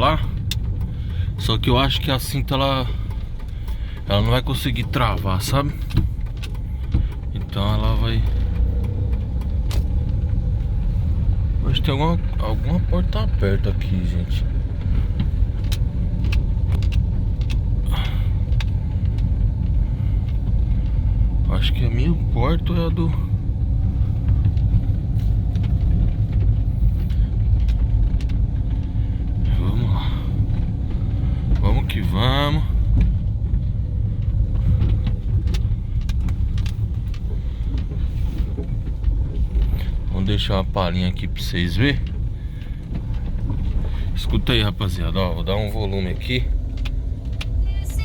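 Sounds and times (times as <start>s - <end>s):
sharp rattling clicks: 0.0s - 29.6s
road and engine rumble: 0.0s - 48.0s.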